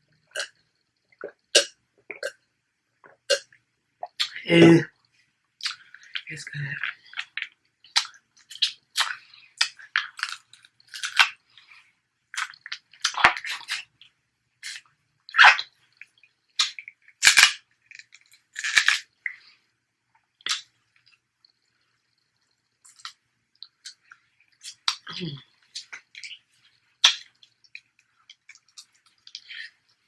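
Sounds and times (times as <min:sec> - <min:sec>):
crab shells cracking: 0:16.6 - 0:19.1.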